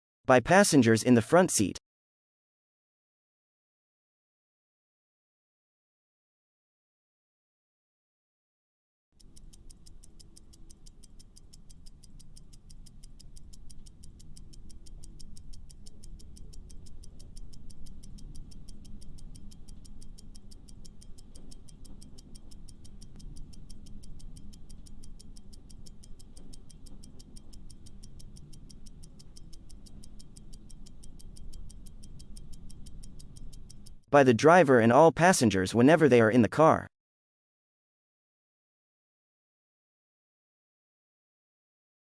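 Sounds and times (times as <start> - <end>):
clock ticking: 9.2 - 34.6.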